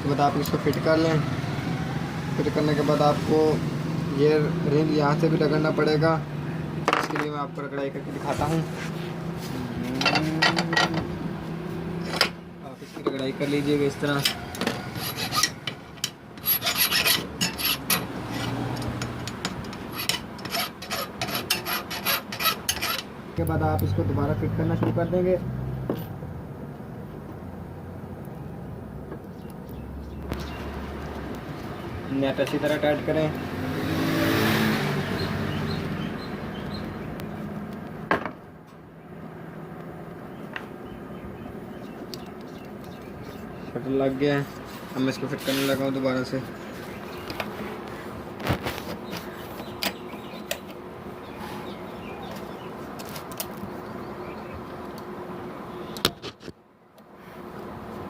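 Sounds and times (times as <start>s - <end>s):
metal parts being handled: 9.9s - 11.0s
metal ring being scraped by hand: 12.0s - 23.1s, 44.5s - 45.8s
small ticks: 42.1s - 43.1s.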